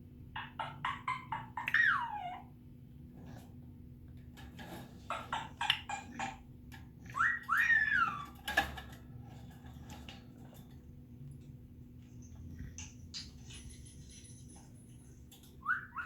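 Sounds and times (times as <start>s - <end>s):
parrot chattering calls: 0.4s - 2.5s, 7.1s - 8.3s, 15.6s - 16.0s
parrot whistling: 7.1s - 8.2s, 15.6s - 16.0s.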